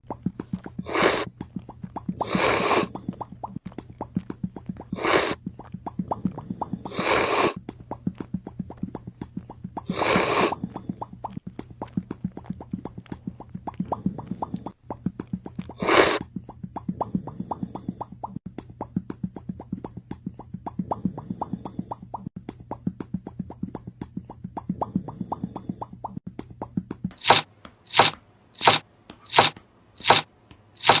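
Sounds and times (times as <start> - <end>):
loud hissing bursts: 0.9 - 1.3, 2.2 - 2.9, 27.2 - 30.2, 30.8 - 31.0.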